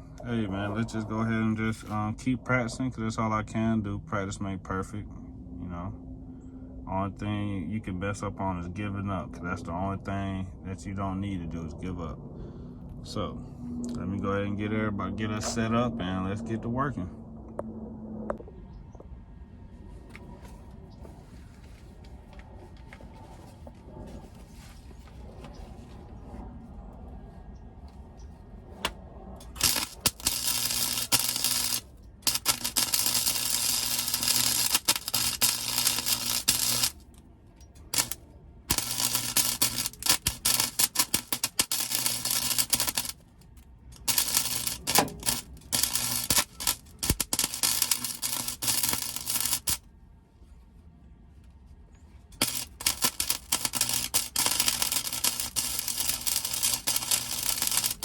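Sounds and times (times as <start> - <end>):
low hum: 0.0 - 58.0
arc welder crackling: 28.8 - 49.9, 52.3 - 58.0.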